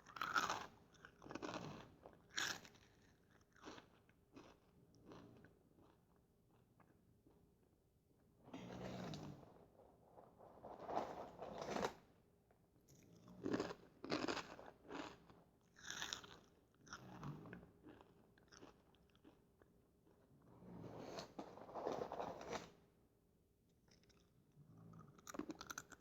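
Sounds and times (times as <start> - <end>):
corn chips crunching: 0.1 - 1.6, 2.3 - 4.5, 13.4 - 15.2, 15.8 - 17.0, 17.8 - 19.3.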